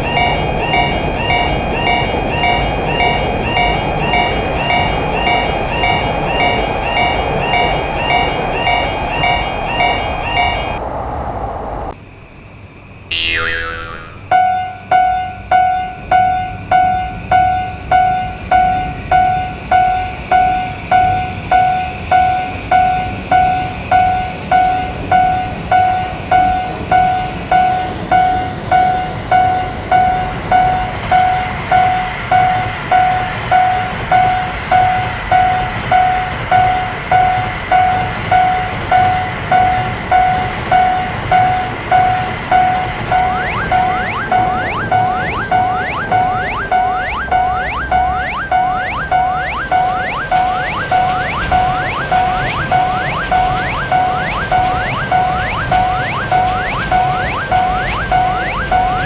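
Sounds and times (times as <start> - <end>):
level crossing alarm dinging: 0.0 - 10.8, 13.1 - 14.8, 29.0 - 59.0
train running noise: 0.0 - 13.0, 15.9 - 59.0.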